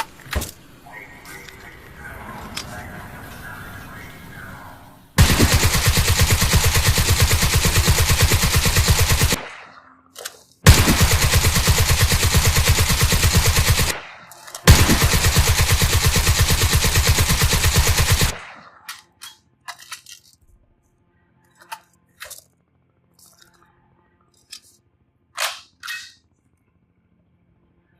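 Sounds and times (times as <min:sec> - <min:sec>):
machine gun automatic fire: 0:05.2 - 0:10.0, 0:10.6 - 0:18.8.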